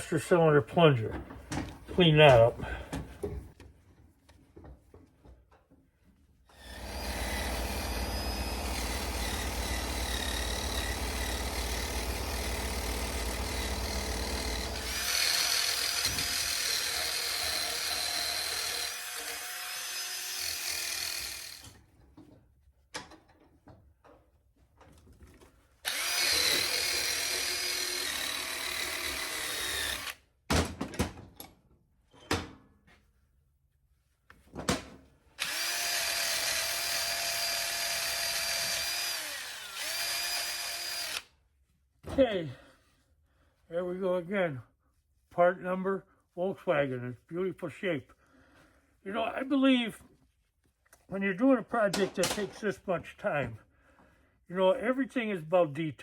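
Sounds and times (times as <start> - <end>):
power tool with wire brush: 6.5 - 21.8, 25.8 - 30.2, 35.4 - 41.3.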